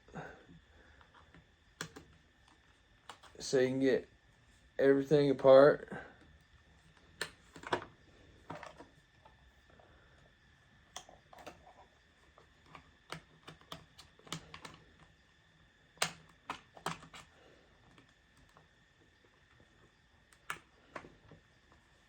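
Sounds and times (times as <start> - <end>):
plastic clicks and snaps: 1.0 - 2.1.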